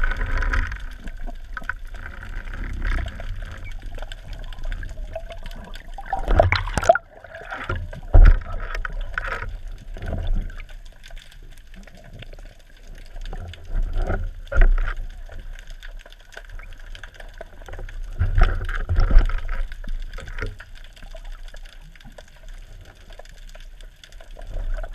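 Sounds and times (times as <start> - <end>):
low underwater rumble: 0.0 - 24.9
water sloshing and gurgling: 0.0 - 24.9.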